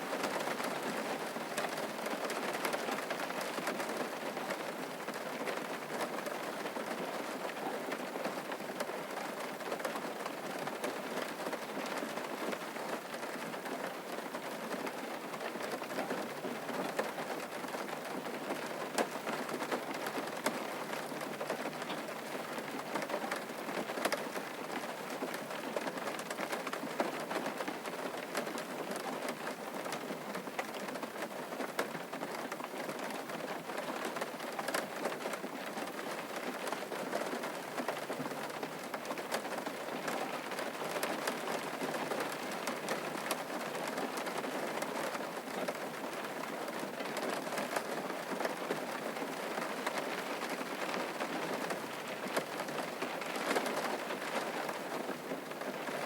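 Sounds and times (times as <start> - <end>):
raindrops ticking on a surface: 0.0 - 56.0
steady rain hiss: 0.0 - 56.0.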